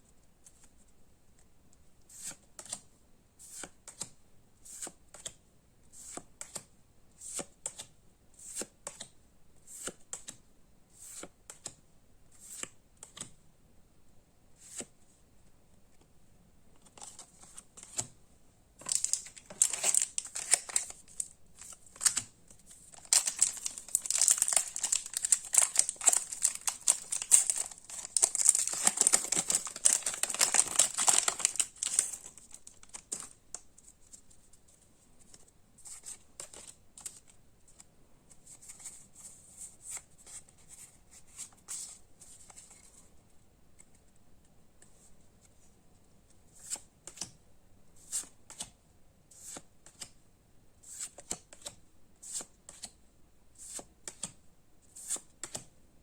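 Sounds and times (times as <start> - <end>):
cards clicking and flicking: 18.8 - 33.4
foil wrapper crinkling and tearing: 18.9 - 22.2, 23.0 - 33.2.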